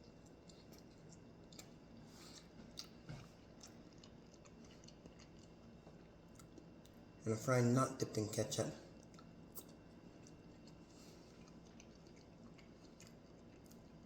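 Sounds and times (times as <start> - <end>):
chewing french fry: 0.0 - 7.2, 8.9 - 14.0.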